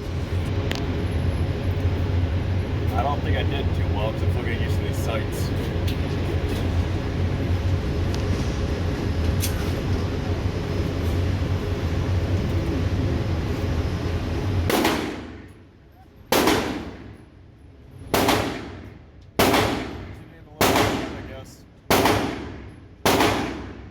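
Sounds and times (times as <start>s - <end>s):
steady low hum: 0.0s - 23.9s
gunshots echoing indoors: 14.7s - 15.5s, 16.3s - 17.2s, 18.1s - 23.9s.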